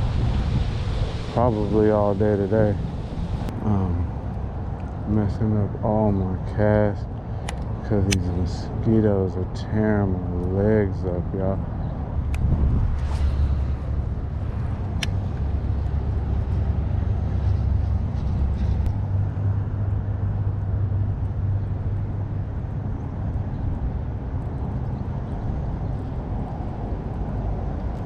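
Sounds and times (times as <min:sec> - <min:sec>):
low rumble: 0:00.0 - 0:06.7, 0:11.0 - 0:28.0
sharp click: 0:07.4 - 0:08.4, 0:14.9 - 0:15.4.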